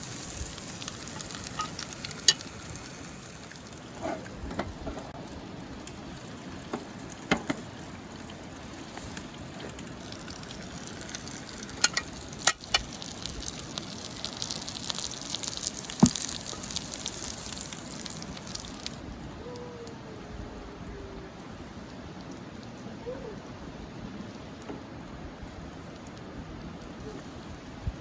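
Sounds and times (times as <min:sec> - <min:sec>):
food sizzling in a pan: 0:00.0 - 0:03.8, 0:08.7 - 0:18.9.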